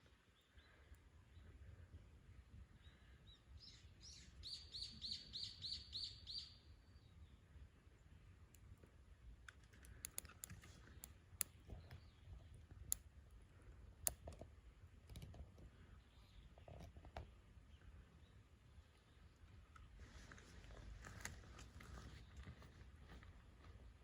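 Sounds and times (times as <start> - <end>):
songbird singing repeated notes: 2.8 - 8.7
campfire crackling: 9.4 - 11.6.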